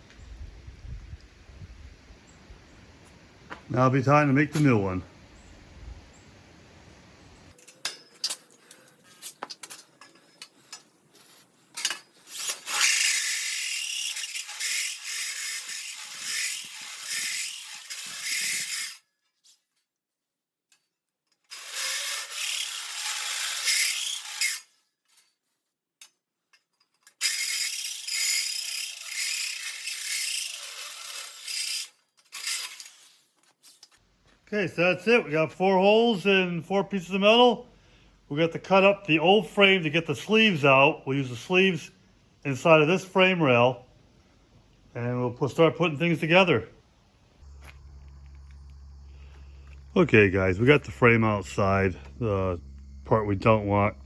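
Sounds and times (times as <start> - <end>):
power tool grinding steel: 10.0 - 19.0, 21.5 - 24.8, 27.1 - 34.0.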